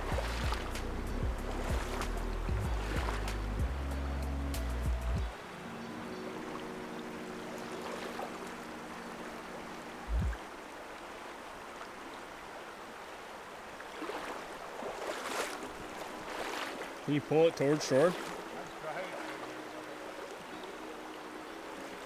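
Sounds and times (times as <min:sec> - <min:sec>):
held notes of music: 0:00.0 - 0:10.4, 0:16.9 - 0:22.0
flowing river water: 0:00.0 - 0:22.0
low thump: 0:10.1 - 0:10.4.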